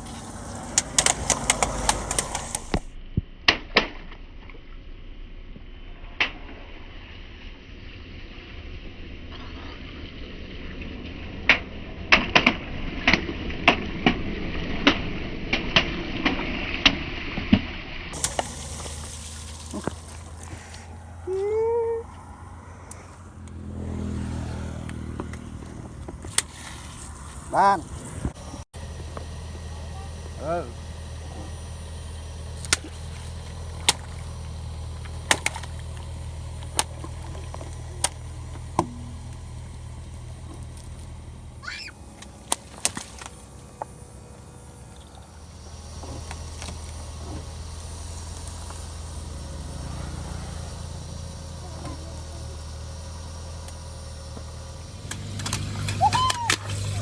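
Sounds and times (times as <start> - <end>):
car engine humming: 0.0 - 3.0, 18.1 - 57.0
low rumble: 17.9 - 57.0
tyre crushing brittle objects: 18.2 - 21.1, 32.5 - 49.9.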